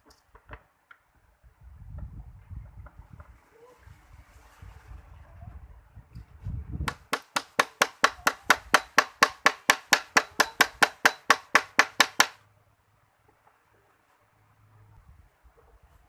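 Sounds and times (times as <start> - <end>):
rapid hammer blows: 6.9 - 12.4.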